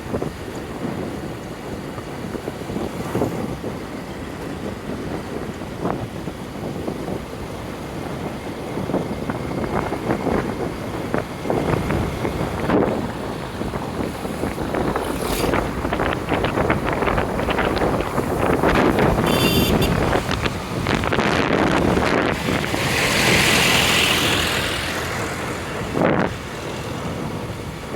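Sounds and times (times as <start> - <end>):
road noise: 0.0 - 27.9
wind buffeting microphone: 0.0 - 27.9
motorcycle engine: 11.5 - 25.9.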